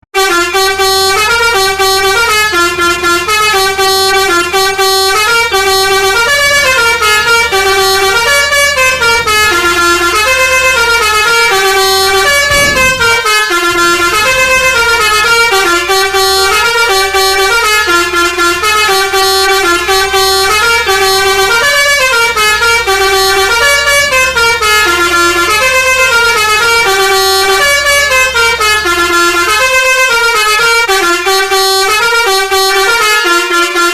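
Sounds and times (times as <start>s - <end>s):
musical air horn melody: 0.2s - 33.9s
low steady rumble: 1.4s - 31.9s
low falling sweep: 10.9s - 15.2s.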